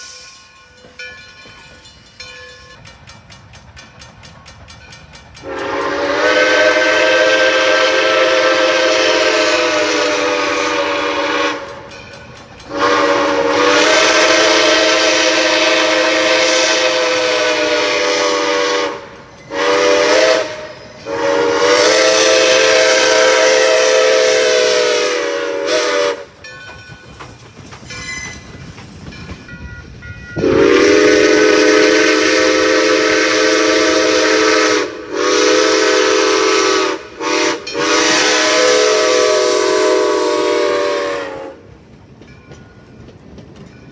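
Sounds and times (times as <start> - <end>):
steam locomotive whistle: 0.0 - 1.1, 5.4 - 12.0, 12.6 - 26.5, 30.4 - 41.7
steam hiss: 0.0 - 43.8.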